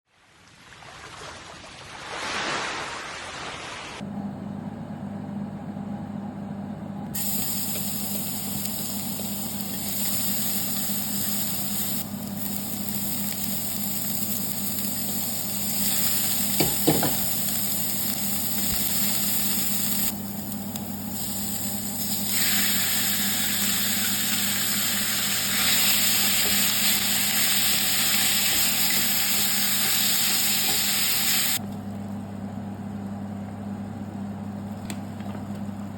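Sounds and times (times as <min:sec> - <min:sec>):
food sizzling in a pan: 0:07.2 - 0:31.6.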